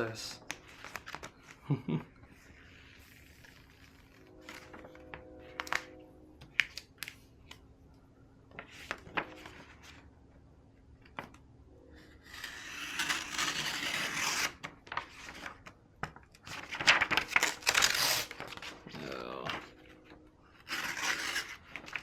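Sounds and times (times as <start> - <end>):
paper tearing: 12.3 - 15.4, 16.6 - 18.8, 20.6 - 22.0
backing paper peeling and rustling: 12.5 - 22.0.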